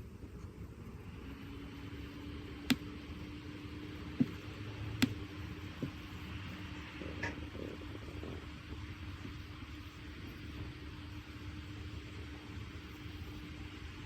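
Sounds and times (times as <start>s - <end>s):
low room hum: 0.0s - 14.0s
objects tapping on desk: 4.2s - 4.4s.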